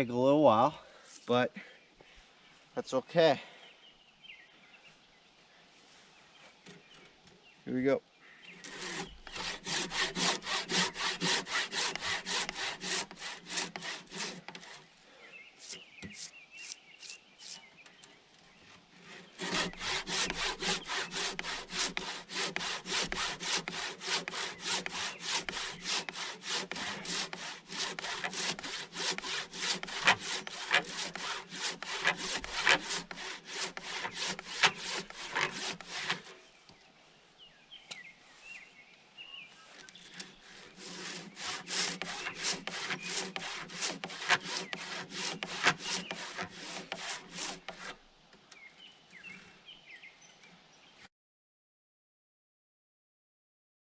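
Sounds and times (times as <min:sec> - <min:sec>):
handsaw cutting through log: 0:08.6 - 0:14.9, 0:15.6 - 0:17.7, 0:19.0 - 0:36.4, 0:40.0 - 0:48.0.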